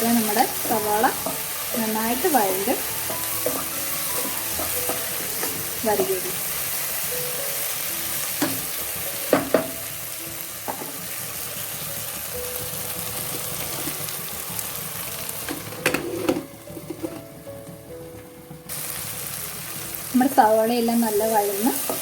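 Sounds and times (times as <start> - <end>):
vegetables sizzling in oil: 0.0 - 22.0.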